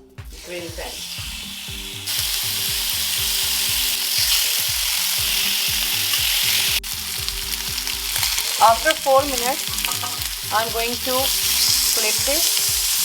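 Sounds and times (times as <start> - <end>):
chicken sizzling in grill pan: 0.4 - 13.0.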